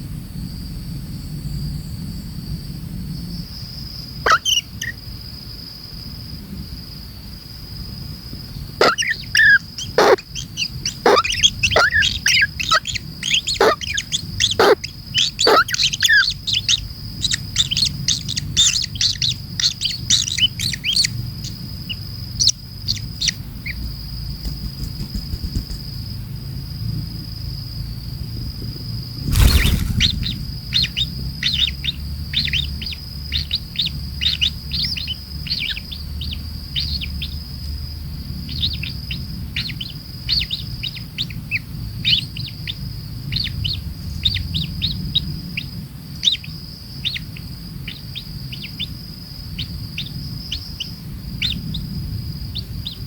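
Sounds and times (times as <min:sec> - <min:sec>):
high insect drone: 0:00.0 - 0:38.4
kingfisher chattering calls: 0:08.8 - 0:21.1.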